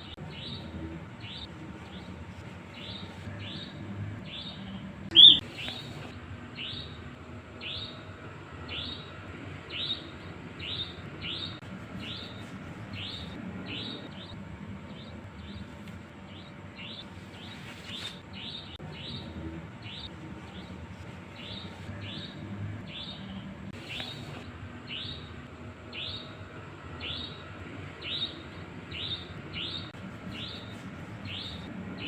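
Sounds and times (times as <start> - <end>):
nightjar calling: 4.3 - 5.9.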